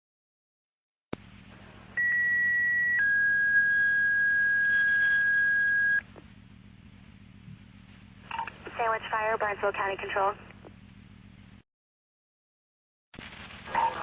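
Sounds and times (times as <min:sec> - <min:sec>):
radio hiss and hum: 0:01.2 - 0:02.2, 0:03.0 - 0:10.8, 0:13.2 - 0:14.0.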